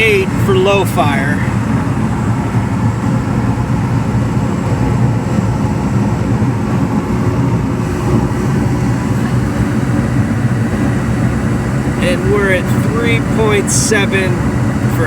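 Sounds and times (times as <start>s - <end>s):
gas heating unit rumbling: 0.0s - 15.0s.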